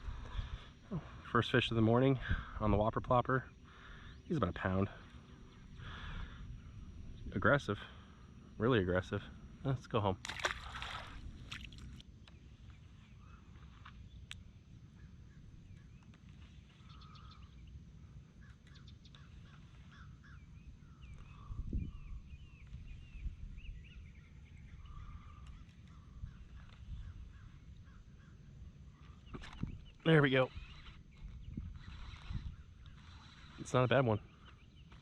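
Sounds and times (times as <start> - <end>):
steady low rumble: 0.0 - 16.0
birds chirping and calling: 18.4 - 35.0.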